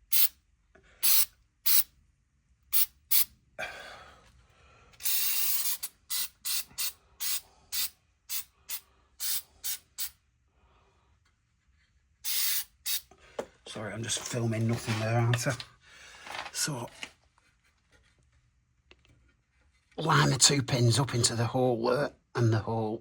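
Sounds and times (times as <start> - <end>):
aerosol can spraying: 0.1 - 0.3, 1.0 - 1.9, 2.8 - 3.3, 5.0 - 10.2, 12.2 - 13.1.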